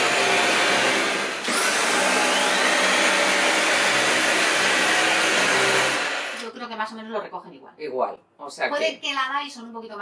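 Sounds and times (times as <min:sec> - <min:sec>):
stick vacuum cleaner running: 0:00.0 - 0:06.5.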